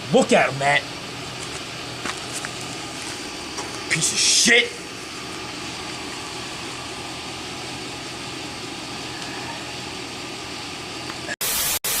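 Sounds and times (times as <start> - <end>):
low mechanical hum: 0.0 - 11.4
burst of static-like hiss: 11.3 - 12.0.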